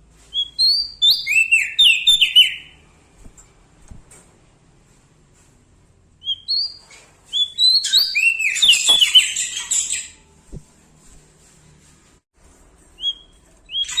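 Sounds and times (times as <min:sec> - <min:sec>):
songbird chirps and trills: 0:00.2 - 0:03.4, 0:06.2 - 0:11.1, 0:12.9 - 0:14.0
songbird whistled notes: 0:00.3 - 0:02.8, 0:06.2 - 0:10.6, 0:13.0 - 0:14.0.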